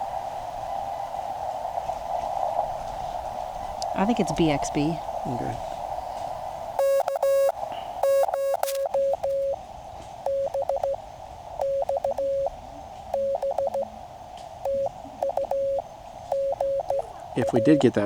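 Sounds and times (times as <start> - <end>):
receiver hiss: 0.0 - 18.0
morse code tones: 6.8 - 9.6, 10.2 - 11.0, 11.6 - 13.9, 14.6 - 18.0.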